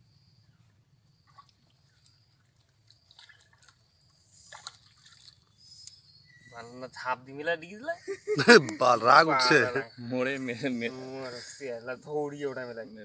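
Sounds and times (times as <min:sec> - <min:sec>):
short sharp splashes: 0:01.2 - 0:05.5
water splashing and dripping: 0:01.2 - 0:06.0.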